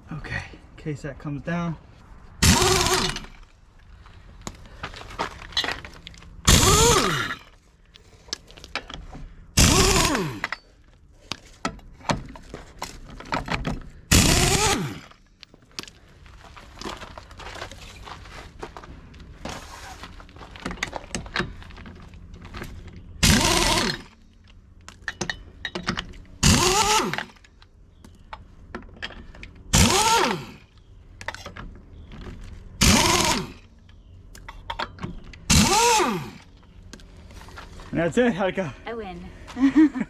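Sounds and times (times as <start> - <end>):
impact wrench whining: 2.4 - 3.5, 5.6 - 7.6, 8.4 - 10.8, 13.4 - 15.3, 22.4 - 28.2, 29.2 - 30.8, 32.7 - 33.8, 34.6 - 36.7.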